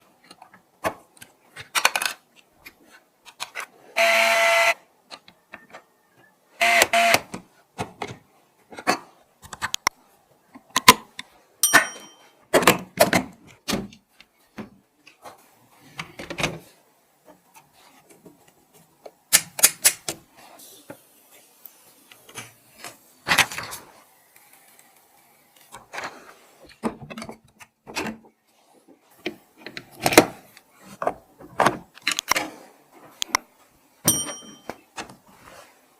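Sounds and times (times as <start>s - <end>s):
hardware clicking and snapping: 19.3s - 20.2s.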